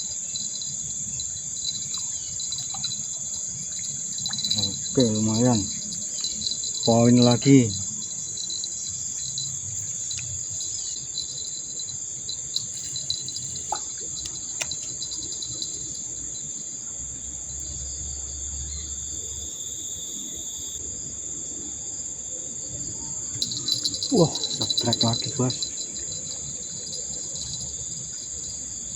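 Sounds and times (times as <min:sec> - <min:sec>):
insects droning: 0:00.0 - 0:28.9.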